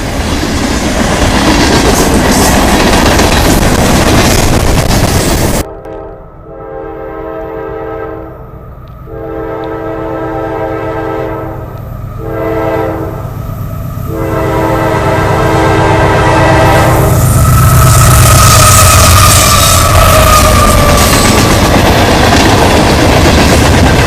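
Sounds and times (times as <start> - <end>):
low rumble of train: 0.0 - 24.0
locomotive air horn blasts: 5.6 - 8.5, 9.1 - 13.3, 14.1 - 17.4.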